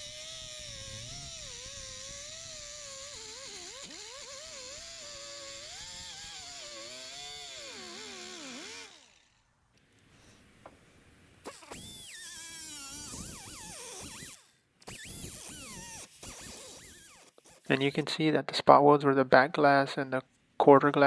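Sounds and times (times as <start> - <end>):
cutoff wheel cutting sheet steel: 0.0 - 9.5.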